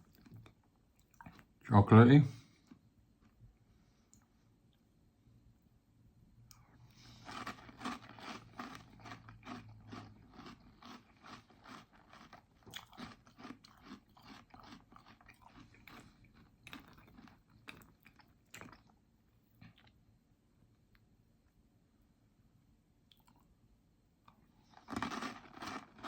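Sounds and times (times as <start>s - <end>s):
person chewing crunchy cereal: 0.0s - 1.5s, 6.5s - 20.0s, 24.3s - 26.0s.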